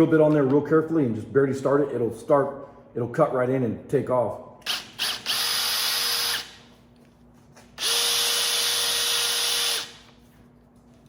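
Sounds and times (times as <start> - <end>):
drill bit cutting into ball: 4.6 - 6.6, 7.8 - 10.1
drill press motor hum: 4.6 - 6.7, 7.8 - 10.2.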